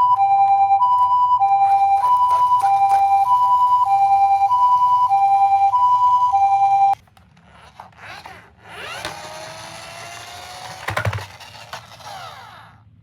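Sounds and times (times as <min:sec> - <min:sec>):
two-tone ambulance siren: 0:00.0 - 0:07.0
toy car wheels rattling and whirring: 0:01.6 - 0:03.7, 0:07.0 - 0:13.0.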